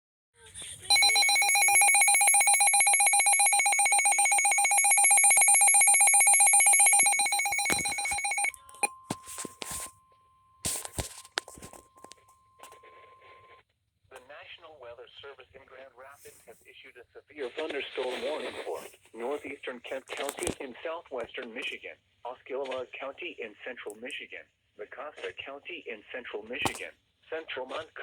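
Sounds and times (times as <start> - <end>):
pulsing electronic alert tone: 0.9 - 8.5
faint steady warning tone: 0.9 - 9.4.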